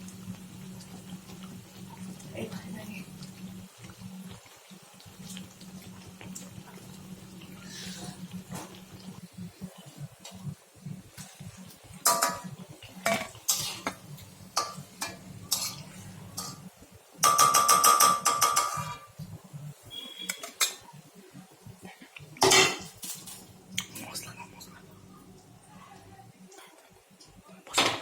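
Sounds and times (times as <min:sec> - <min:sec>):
metal utensils clinking on pots: 0:12.0 - 0:14.0, 0:14.6 - 0:19.1, 0:20.0 - 0:20.9, 0:22.4 - 0:23.5.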